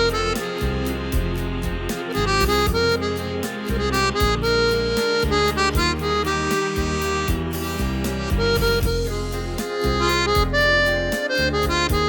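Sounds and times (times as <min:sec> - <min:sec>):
accordion music: 0:00.0 - 0:12.0.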